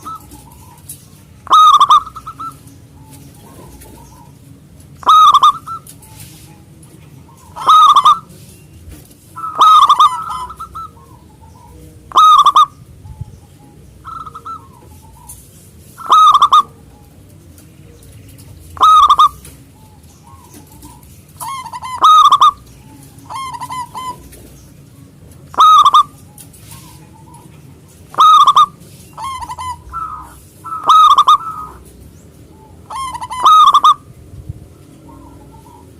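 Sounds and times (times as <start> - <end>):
dove cooing song: 0.0 - 35.9.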